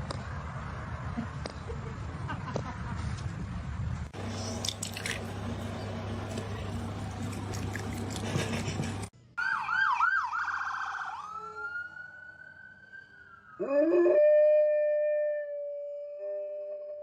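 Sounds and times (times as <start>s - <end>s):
steady noise with low hum: 0.0s - 9.1s
emergency vehicle siren: 9.4s - 17.0s.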